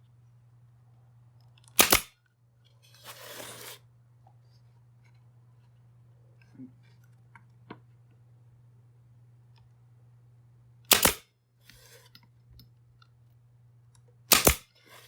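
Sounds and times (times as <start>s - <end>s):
pneumatic nailer bang: 1.8s - 2.1s, 10.9s - 11.2s, 14.3s - 14.7s.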